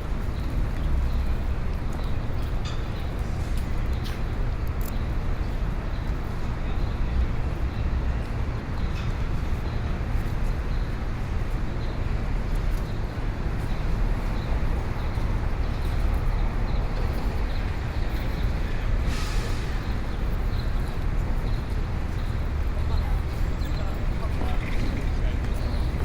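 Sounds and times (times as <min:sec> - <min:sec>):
rumble of passing traffic: 0:00.0 - 0:26.0
brief burst of hiss: 0:19.1 - 0:19.8.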